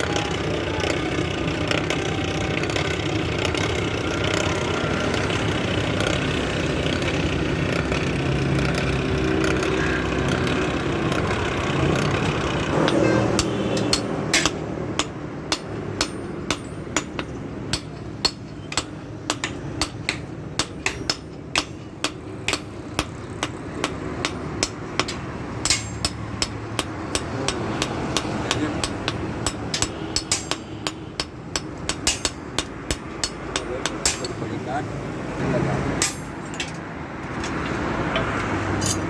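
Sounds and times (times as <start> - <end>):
hammer striking axe head: 12.8 - 34.4, 36.0 - 36.8.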